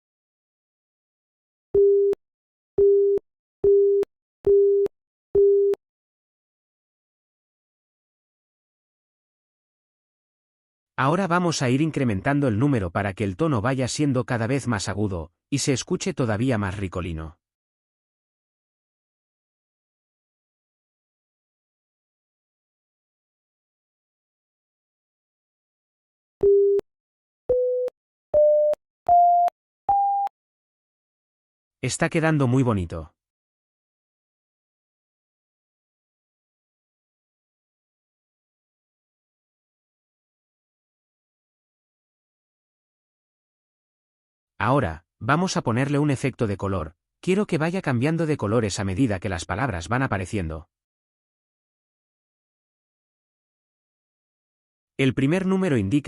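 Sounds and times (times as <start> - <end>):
beep clicks: 27.5 - 30.3.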